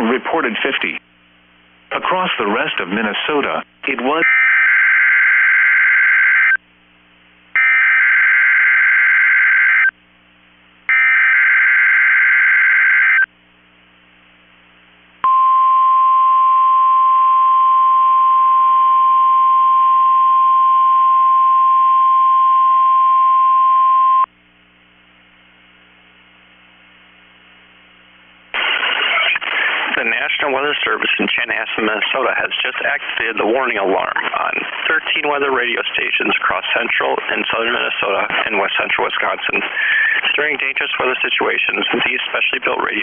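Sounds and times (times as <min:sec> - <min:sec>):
steady alarm tone beep: 0:04.2 - 0:06.6, 0:07.6 - 0:09.9
faint radio hiss: 0:13.3 - 0:15.2, 0:24.3 - 0:43.0.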